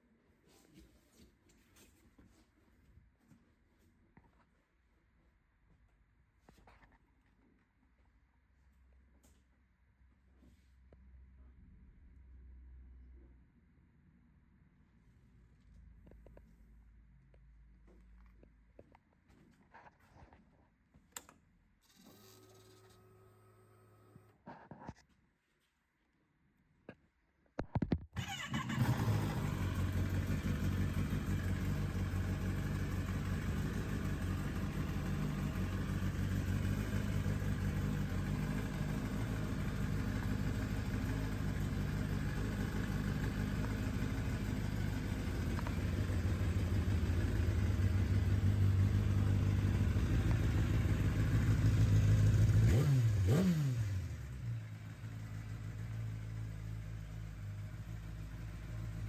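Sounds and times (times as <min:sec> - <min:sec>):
motorcycle engine idling: 0:28.2 - 0:59.0.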